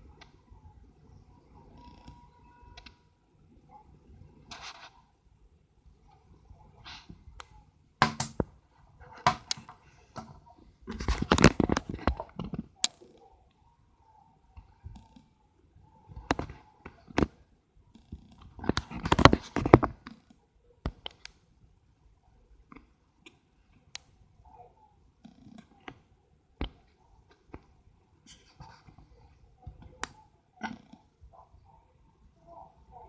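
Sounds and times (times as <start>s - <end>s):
sharp clicks and knocks: 7.4s - 8.5s.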